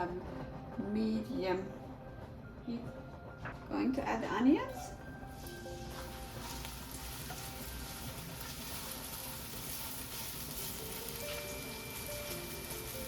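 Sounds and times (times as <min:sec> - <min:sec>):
onions sizzling in oil: 0:05.2 - 0:13.0.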